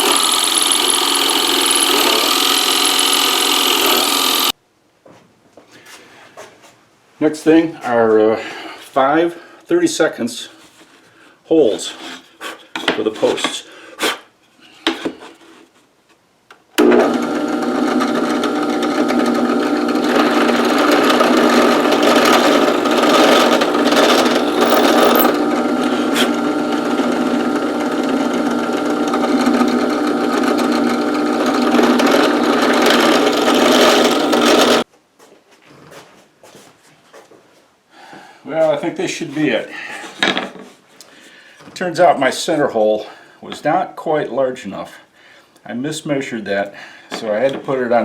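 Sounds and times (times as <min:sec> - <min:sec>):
electric drill boring into wood: 0:00.0 - 0:04.5, 0:16.8 - 0:34.8.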